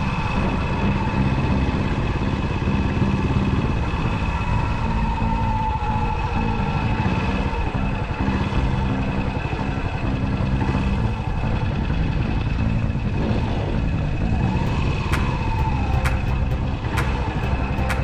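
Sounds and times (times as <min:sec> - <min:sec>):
sharp clicks: 0:14.7 - 0:18.0.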